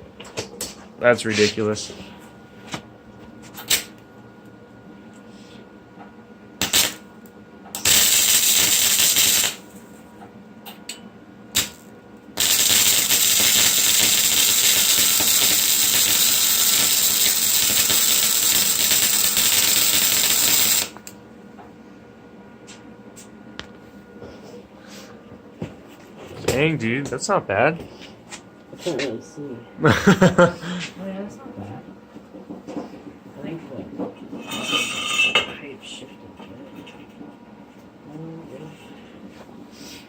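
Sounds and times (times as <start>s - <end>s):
welding arc crackling and hissing: 6.6s - 7.1s, 7.8s - 9.9s, 11.6s - 21.2s.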